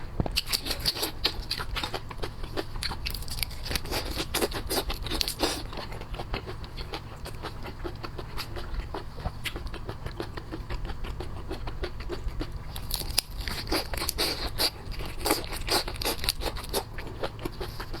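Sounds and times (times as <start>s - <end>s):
crisp crunching and smacking: 0.0s - 18.0s
chewing with wet clicks: 0.2s - 18.0s.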